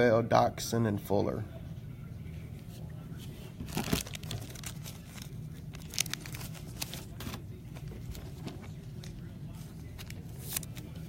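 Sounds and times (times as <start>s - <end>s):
steady low hum: 0.0s - 11.0s
cards clicking and rustling: 3.6s - 11.0s.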